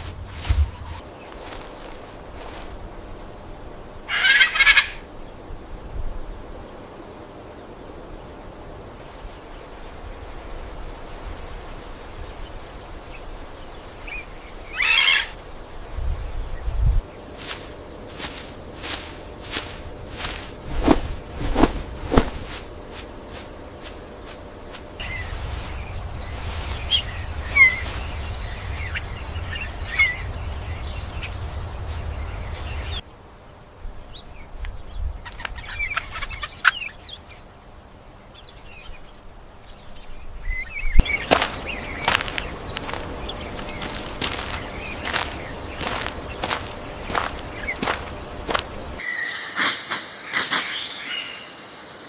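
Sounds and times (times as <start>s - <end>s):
birds chirping: 0.0s - 5.4s, 12.2s - 33.1s, 38.2s - 52.0s
forest ambience hum: 0.0s - 52.0s.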